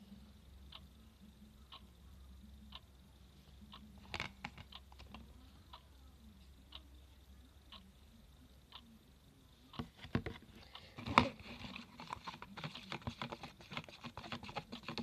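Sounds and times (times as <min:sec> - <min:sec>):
low steady hum: 0:00.0 - 0:15.0
clock ticking: 0:00.7 - 0:01.0, 0:01.6 - 0:01.9, 0:02.6 - 0:03.0, 0:03.7 - 0:06.0, 0:07.6 - 0:08.0.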